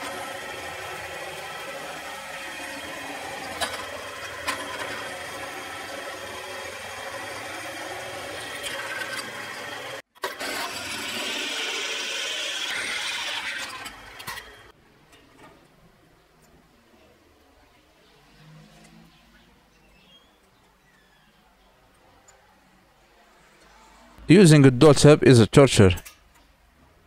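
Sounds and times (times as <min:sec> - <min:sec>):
electric drill boring steel: 0:00.0 - 0:14.7.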